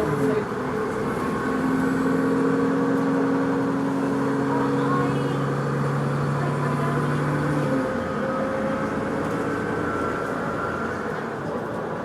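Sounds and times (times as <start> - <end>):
vehicle droning: 0.0 - 12.0.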